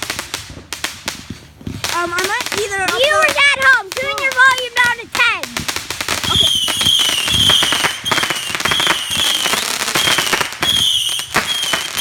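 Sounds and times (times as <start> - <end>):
fireworks crackling pops: 0.0 - 12.0
fireworks whistling: 0.0 - 12.0.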